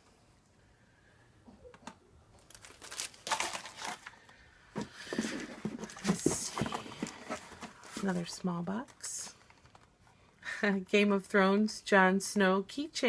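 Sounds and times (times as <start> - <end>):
packaging tearing: 2.4 - 4.2
packaging crinkling and rustling: 2.4 - 8.4.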